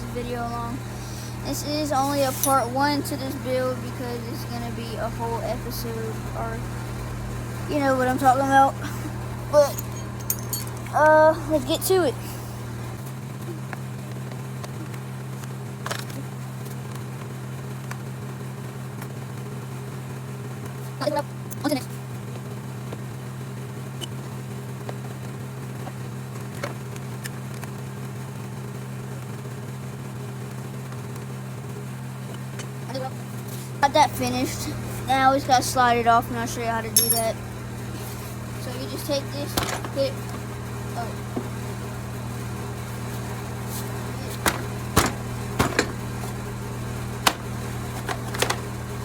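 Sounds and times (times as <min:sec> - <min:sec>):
air conditioner humming: 0:00.0 - 0:16.6, 0:31.5 - 0:49.0
plastic panels knocking and clicking: 0:44.4 - 0:46.0, 0:47.2 - 0:48.7.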